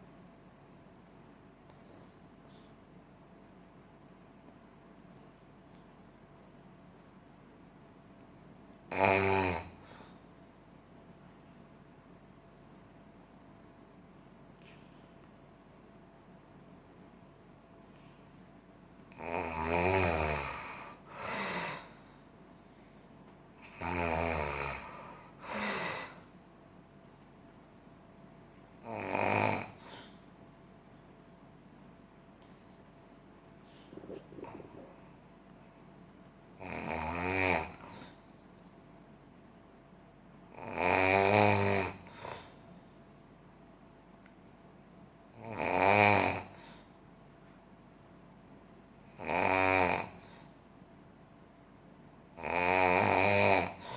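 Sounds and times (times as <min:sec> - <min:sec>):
person snoring heavily: 0:08.9 - 0:10.1, 0:19.1 - 0:22.0, 0:23.6 - 0:26.3, 0:28.8 - 0:30.2, 0:33.9 - 0:35.2, 0:36.6 - 0:38.2, 0:40.5 - 0:42.6, 0:45.4 - 0:46.8, 0:49.1 - 0:50.4, 0:52.4 - 0:53.9.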